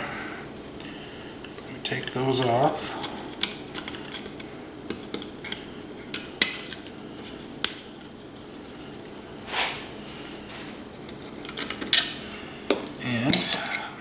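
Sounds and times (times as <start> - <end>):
brief rushing noise: 9.4 - 10.0.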